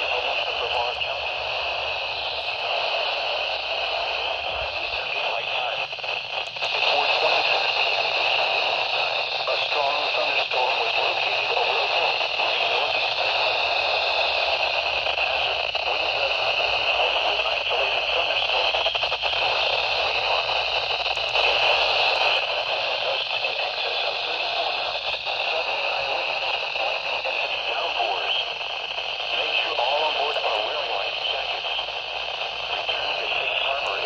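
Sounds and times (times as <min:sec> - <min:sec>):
radio static hiss: 0:00.0 - 0:34.0.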